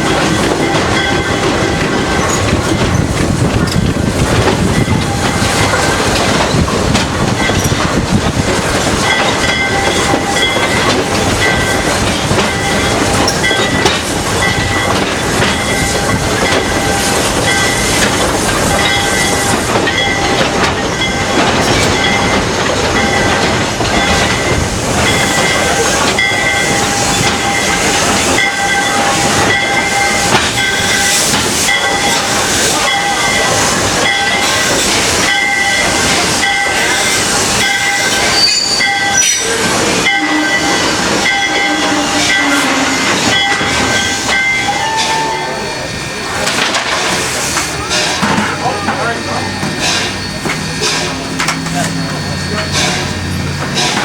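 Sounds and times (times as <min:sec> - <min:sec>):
train wheels clicking over rail joints: 0:00.0 - 0:54.0
high-pitched tone: 0:40.0 - 0:46.4.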